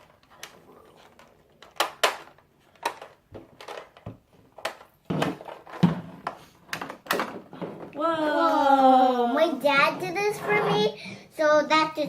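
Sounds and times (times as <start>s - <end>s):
plastic toy clicking and clattering: 0.0s - 4.0s, 4.6s - 7.4s
sharp plastic knocks: 1.6s - 7.7s.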